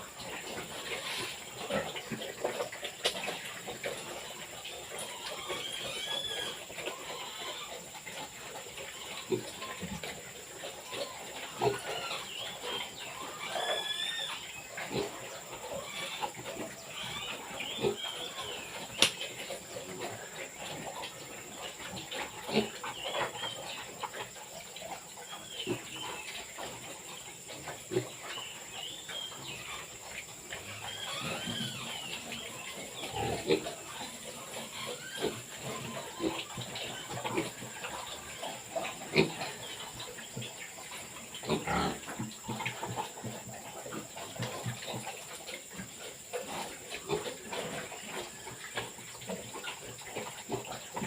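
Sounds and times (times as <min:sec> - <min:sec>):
small birds chirping: 0:04.2 - 0:07.8, 0:10.6 - 0:19.4, 0:20.0 - 0:43.2.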